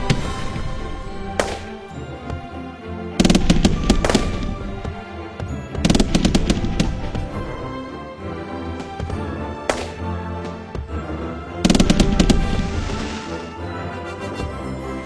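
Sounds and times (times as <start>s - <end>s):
fireworks bursts: 3.2s - 4.8s, 5.8s - 7.6s, 11.7s - 13.5s.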